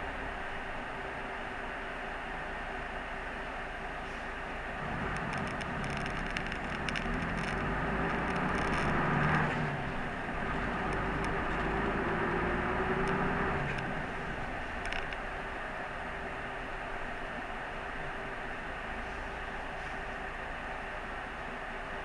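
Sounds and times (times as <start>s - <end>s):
bus engine and road drone: 0.0s - 22.0s
light rattles: 4.8s - 15.6s.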